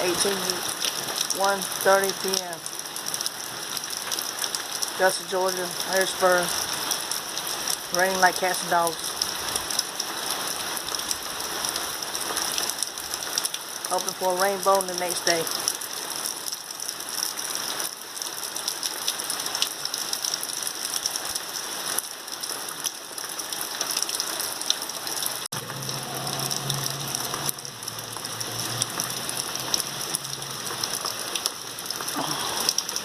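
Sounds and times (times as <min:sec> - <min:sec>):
heavy rain falling: 0:00.0 - 0:33.0
low hum: 0:25.6 - 0:30.7.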